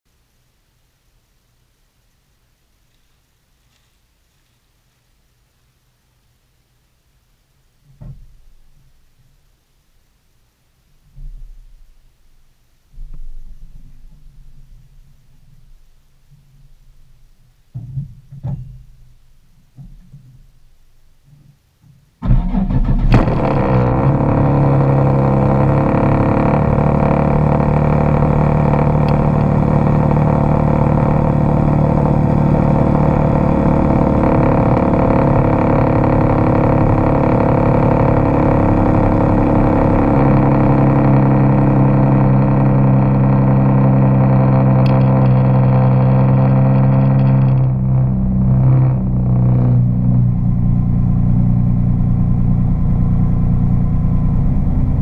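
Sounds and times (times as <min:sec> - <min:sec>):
car engine drone: 0:22.2 - 0:55.0.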